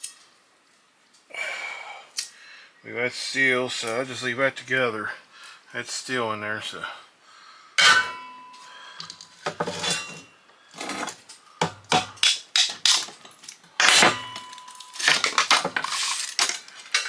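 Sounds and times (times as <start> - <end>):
metal parts clanking: 7.8 - 11.2, 12.2 - 17.0.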